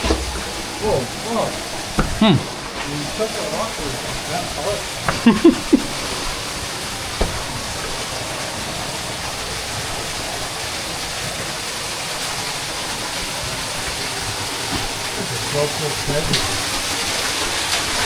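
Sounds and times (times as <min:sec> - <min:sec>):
flowing cave water: 0:00.0 - 0:18.0.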